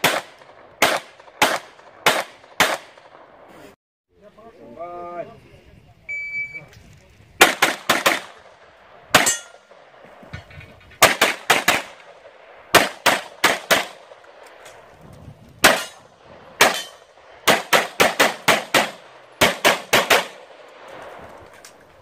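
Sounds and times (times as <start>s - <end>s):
handgun shots: 16.6s - 20.4s.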